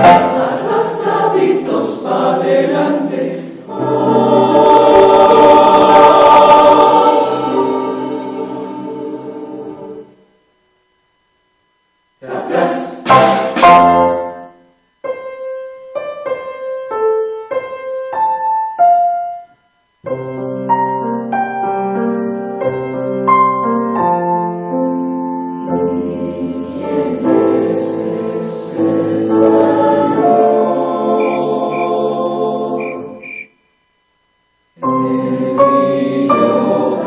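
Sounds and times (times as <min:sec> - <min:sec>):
keyboard music: 0:27.6 - 0:33.2.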